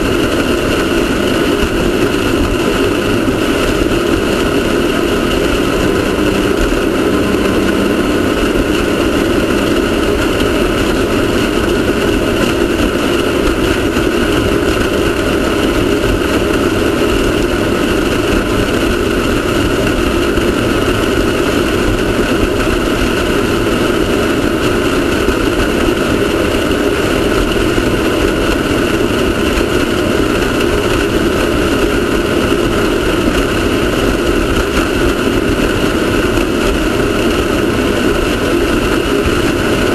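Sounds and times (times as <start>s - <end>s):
race car engine running: 0.0s - 39.9s.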